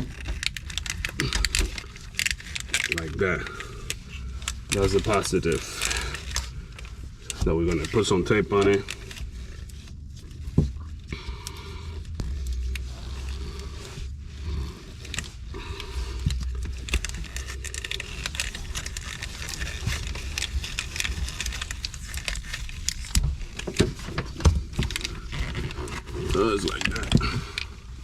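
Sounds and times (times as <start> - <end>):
low steady hum: 0.0 - 28.0
tape peeling off roll: 0.0 - 28.0.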